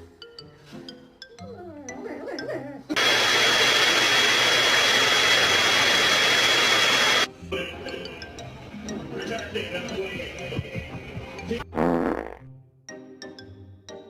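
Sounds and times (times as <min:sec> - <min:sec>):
small electric motor whining: 0:03.0 - 0:07.3.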